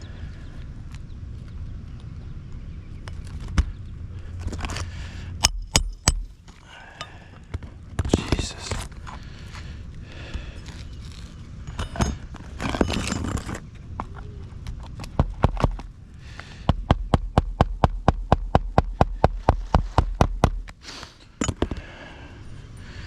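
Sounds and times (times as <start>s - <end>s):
scraping and rustling: 10.6s - 14.5s
hammer striking roofing nails: 16.7s - 20.7s.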